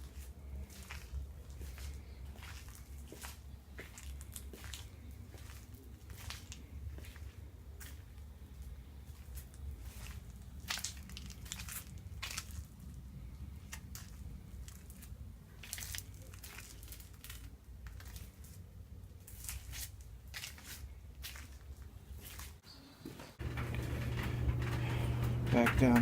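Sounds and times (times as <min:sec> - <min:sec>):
rustling and scuffing: 0:00.0 - 0:26.0
steady low hum: 0:23.4 - 0:26.0.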